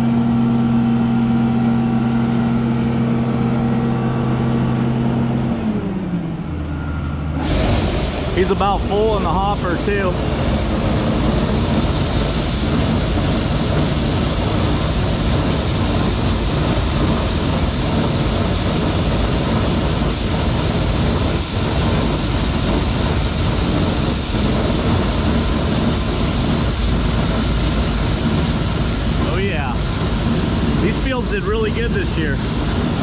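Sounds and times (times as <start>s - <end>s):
heavy machinery engine running: 0.0s - 33.0s
hiss: 7.4s - 33.0s.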